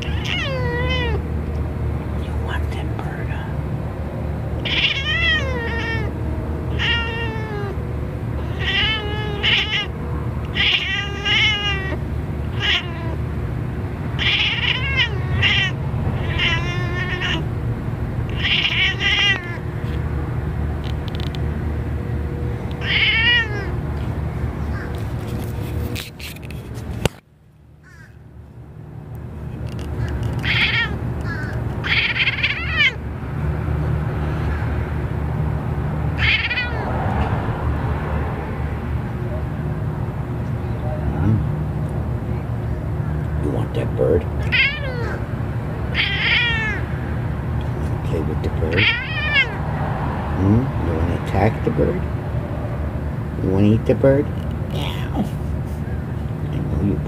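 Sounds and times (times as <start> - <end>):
cat meowing: 0.0 - 1.3, 4.6 - 7.8, 8.4 - 13.3, 14.2 - 17.6, 18.3 - 20.0, 22.7 - 23.8, 30.0 - 33.0, 36.2 - 37.3, 44.4 - 45.3, 45.9 - 47.0, 48.6 - 49.7
steady low rumble: 0.0 - 57.0.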